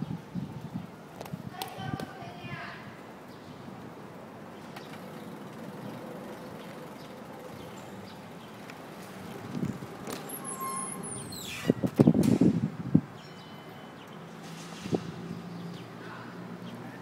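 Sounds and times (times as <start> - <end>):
traffic hum: 0.0 - 17.0
high squeal falling in pitch: 10.3 - 11.8.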